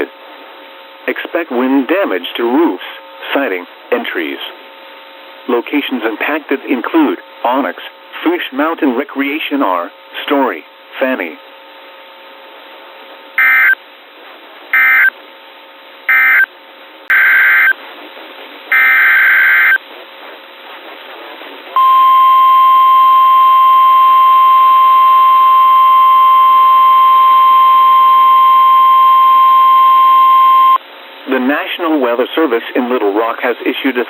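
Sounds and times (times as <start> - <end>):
steady warning alarm tone: 13.4 - 13.8, 14.8 - 15.1, 16.1 - 16.5, 17.1 - 17.8, 18.7 - 19.8, 21.8 - 30.8.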